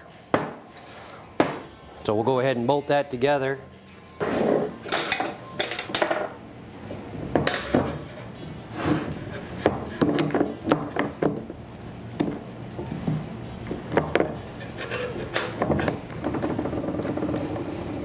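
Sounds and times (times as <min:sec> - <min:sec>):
steel parts clinking and knocking: 0:04.8 - 0:06.3, 0:14.6 - 0:17.6
metallic scrapes: 0:14.5 - 0:18.0.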